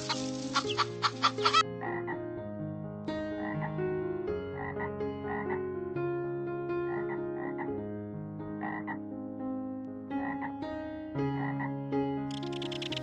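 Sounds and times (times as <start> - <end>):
frogs croaking: 0.0 - 2.2, 3.4 - 3.7, 4.6 - 5.6, 6.9 - 7.7, 8.6 - 9.0, 10.2 - 10.6, 11.4 - 11.7, 12.3 - 13.0.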